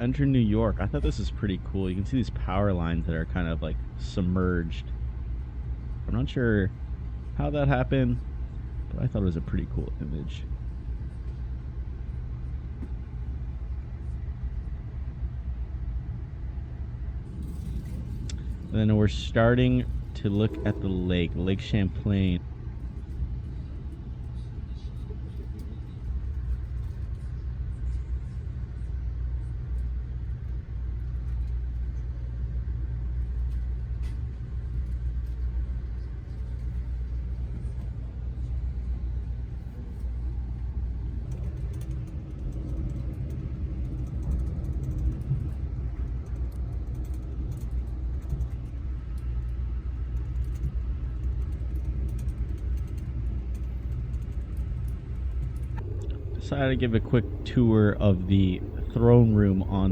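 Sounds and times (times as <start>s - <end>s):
train rumble from inside car: 0.0s - 59.9s.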